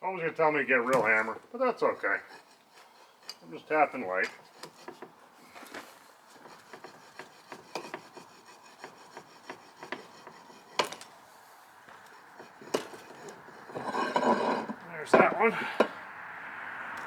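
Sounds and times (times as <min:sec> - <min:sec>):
scraping on wood: 0:00.7 - 0:16.0.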